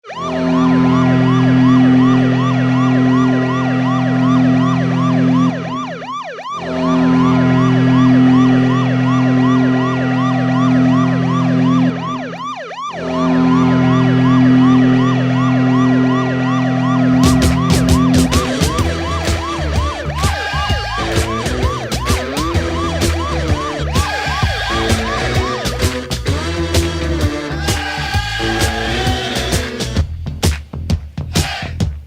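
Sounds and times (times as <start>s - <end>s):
siren whoop: 0.0s - 26.1s, 27.4s - 29.8s
low horn chord: 0.3s - 5.5s, 6.6s - 11.8s.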